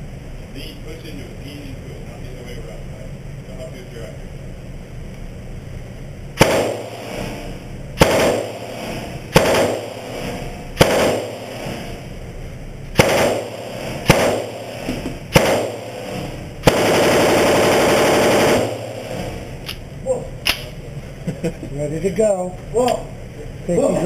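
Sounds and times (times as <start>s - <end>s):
rifle shots echoing: 6.4s - 7.4s, 8.0s - 12.0s, 13.0s - 19.6s
burst of rapid gunfire: 6.4s - 12.0s, 13.0s - 19.5s.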